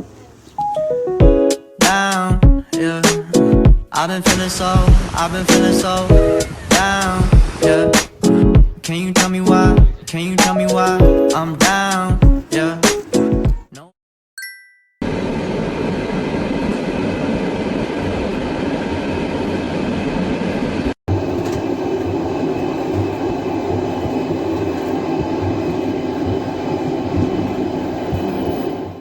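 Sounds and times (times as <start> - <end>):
moving vehicle rumble and rattle: 4.0 - 13.4, 15.3 - 29.0
two-note chime: 14.4 - 15.0.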